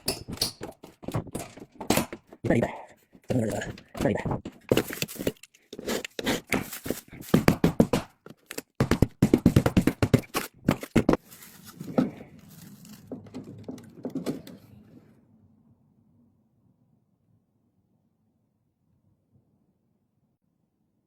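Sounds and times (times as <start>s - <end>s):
crackling scraping knocks: 0.0s - 14.6s.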